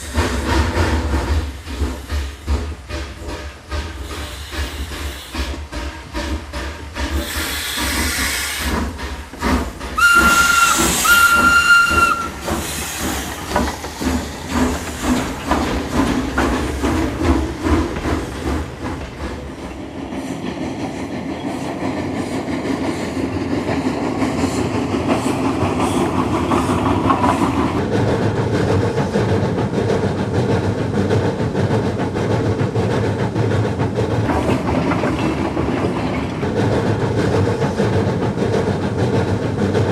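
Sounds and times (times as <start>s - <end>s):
steam hissing: 0.0s - 27.8s
steam locomotive puffing: 0.0s - 27.9s
steam whistle blasts: 10.0s - 12.4s.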